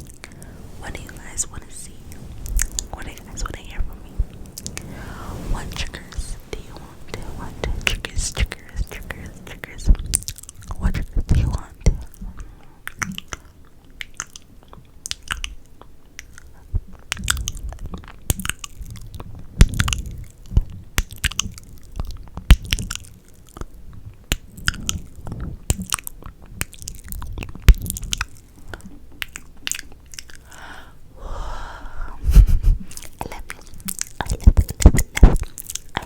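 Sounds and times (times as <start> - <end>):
tongue clicks: 12.9 - 17.6, 32.8 - 36.0
wet lip smacks and kisses: 24.3 - 30.5, 32.4 - 36.0
breathy mouth sound: 27.0 - 36.0.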